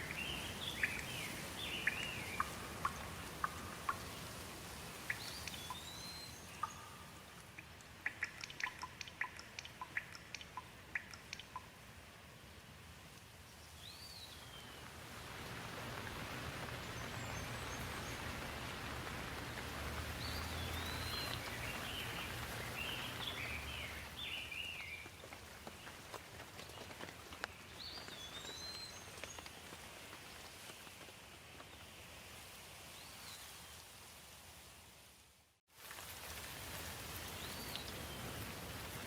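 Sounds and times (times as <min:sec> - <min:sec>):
bird chirping: 0:00.0 - 0:11.8, 0:20.2 - 0:25.1
steady rain falling: 0:00.0 - 0:39.0.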